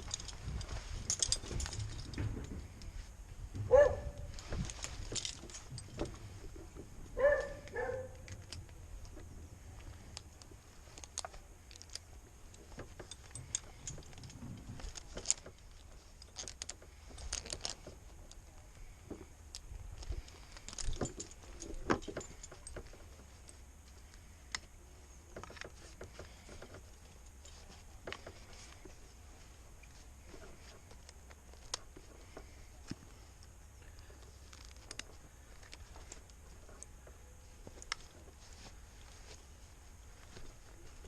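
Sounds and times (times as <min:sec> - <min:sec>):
metal gear clinking and rattling: 0:00.0 - 0:03.0, 0:03.7 - 0:06.3, 0:10.8 - 0:17.9, 0:20.0 - 0:23.6.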